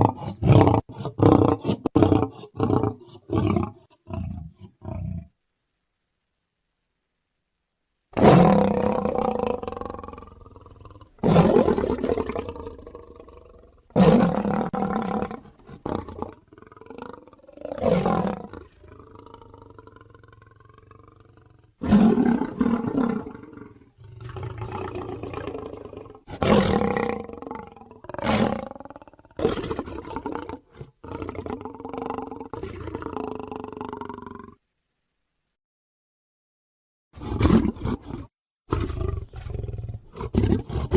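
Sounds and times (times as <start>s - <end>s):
creature roars and growls: 37.2s - 40.9s.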